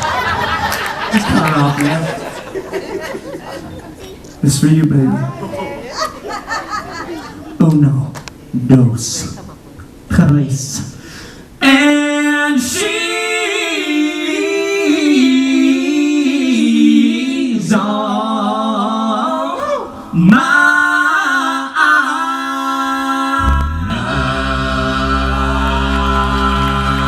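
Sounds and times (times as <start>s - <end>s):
solo voices singing riffs: 11.6s - 27.0s
group singing held chord: 12.5s - 27.0s
deep bass voice: 23.4s - 27.0s.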